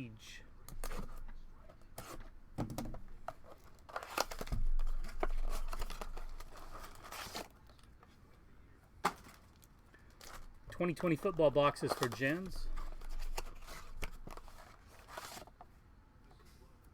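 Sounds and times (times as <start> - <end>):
plastic wrap crinkling and tearing: 3.4 - 7.6.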